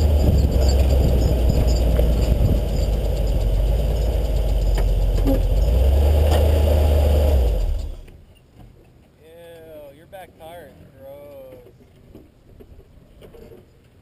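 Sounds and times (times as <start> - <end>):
truck engine rumbling: 0.0 - 8.4.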